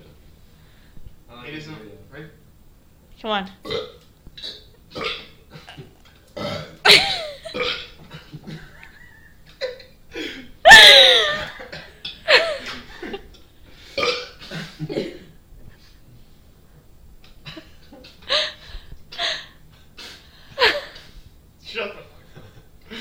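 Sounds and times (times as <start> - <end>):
people belching loudly: 3.6 - 6.8.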